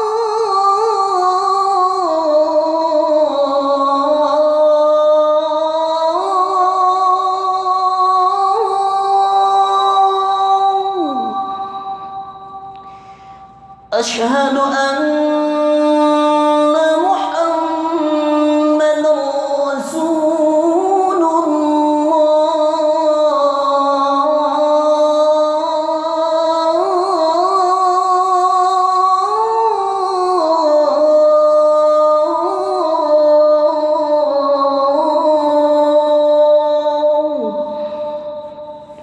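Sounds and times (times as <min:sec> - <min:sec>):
man chanting call to prayer: 0:13.9 - 0:39.0.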